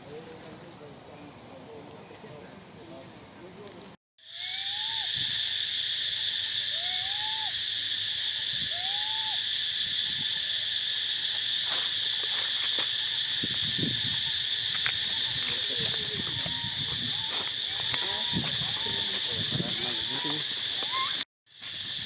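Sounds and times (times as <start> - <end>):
high insect drone: 4.2 - 22.0
baby monkey crying calls: 4.3 - 5.6, 6.4 - 7.7, 8.6 - 9.5, 15.0 - 21.2.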